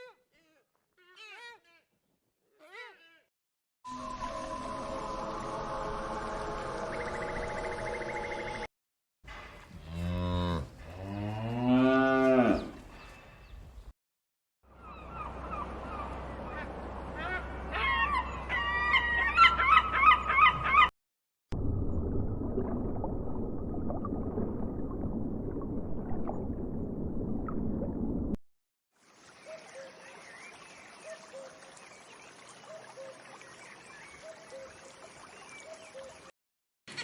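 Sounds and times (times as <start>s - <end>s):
din of livestock: 9.3s - 13.4s
cattle mooing: 9.8s - 12.8s.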